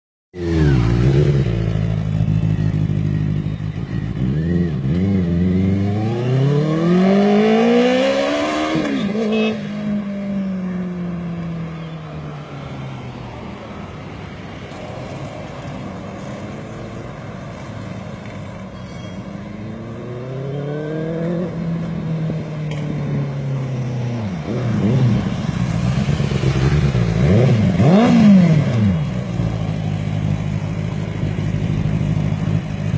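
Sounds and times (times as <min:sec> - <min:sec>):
motorcycle engine revving: 0:00.4 - 0:10.5, 0:19.5 - 0:32.9.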